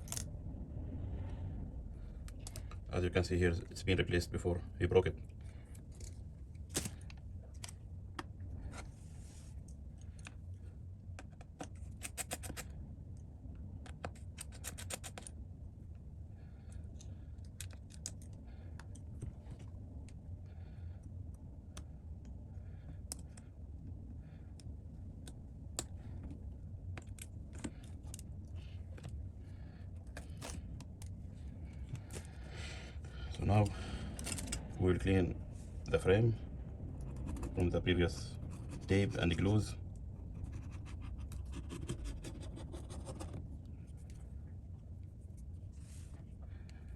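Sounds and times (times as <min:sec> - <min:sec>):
steady low hum: 0:00.0 - 0:46.9.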